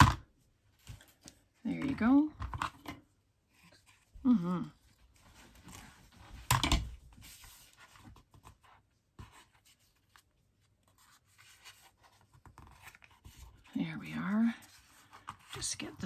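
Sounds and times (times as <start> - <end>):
paper rustling and scraping: 5.0 - 16.0.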